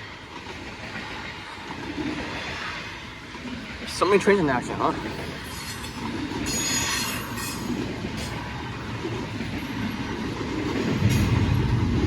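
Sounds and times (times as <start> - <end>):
freight train wheels rumbling: 0.0 - 12.0
steel wheels squealing: 5.4 - 7.8.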